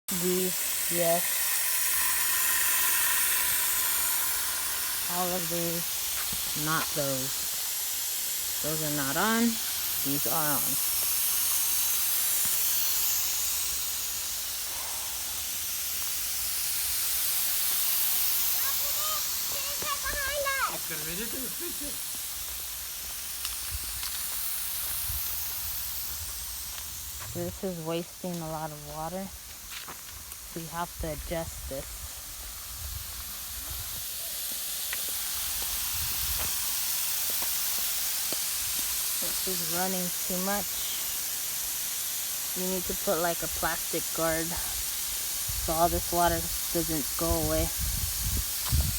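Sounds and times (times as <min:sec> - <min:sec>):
sprinkler spraying water: 0:00.1 - 0:48.9.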